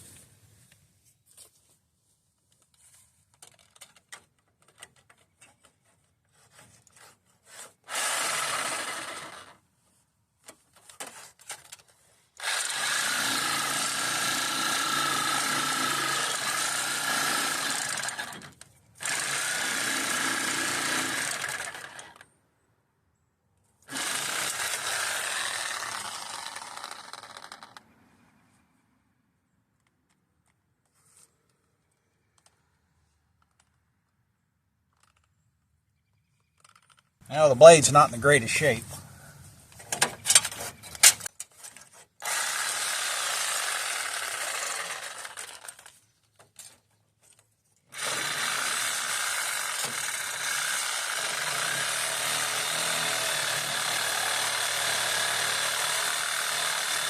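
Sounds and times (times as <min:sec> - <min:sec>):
power saw cutting steel: 0:07.5 - 0:09.6, 0:12.4 - 0:22.2, 0:23.9 - 0:27.8, 0:42.2 - 0:45.8, 0:47.9 - 0:57.0.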